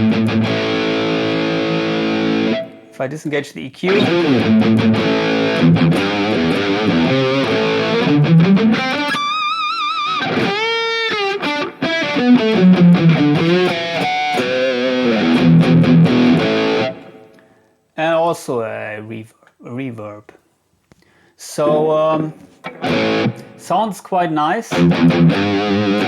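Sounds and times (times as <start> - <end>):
distorted electric guitar riffing: 0.0 - 2.9, 3.9 - 17.4, 21.6 - 23.7, 24.7 - 26.0.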